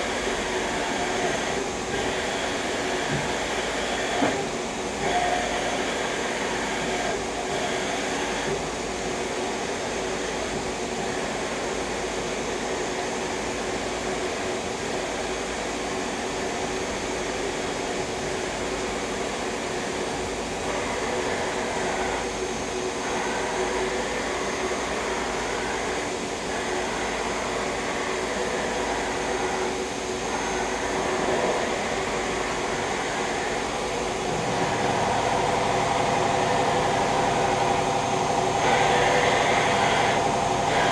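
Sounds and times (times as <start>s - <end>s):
machining center humming: 20.6s - 40.9s.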